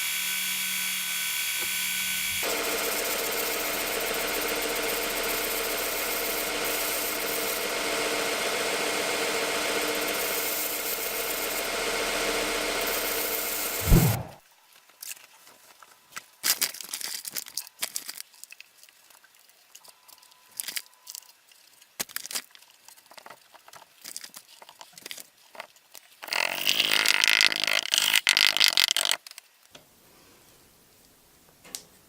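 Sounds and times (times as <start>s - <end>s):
small powered tool whirring: 0.0s - 14.3s.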